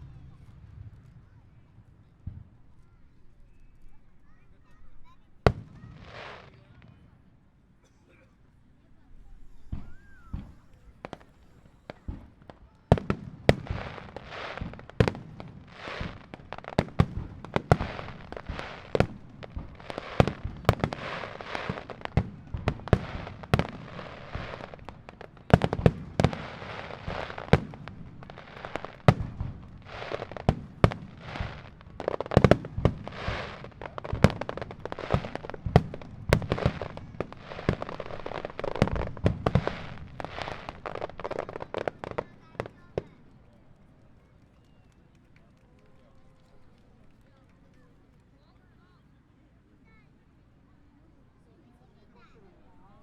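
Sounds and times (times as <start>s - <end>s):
fireworks crackling: 0.0s - 7.2s, 9.1s - 48.6s
fireworks bangs: 5.4s - 7.1s, 9.1s - 47.9s.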